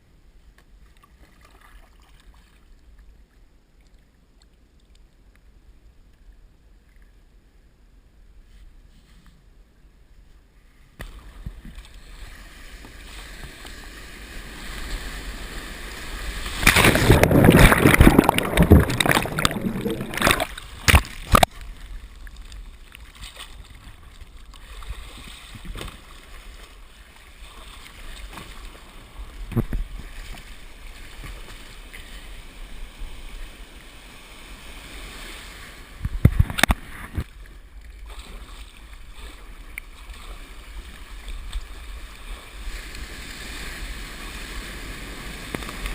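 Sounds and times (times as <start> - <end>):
surf crashing over camera: 14.3 - 21.5
sharp water splashes: 16.2 - 21.6
water sloshing: 16.4 - 31.7.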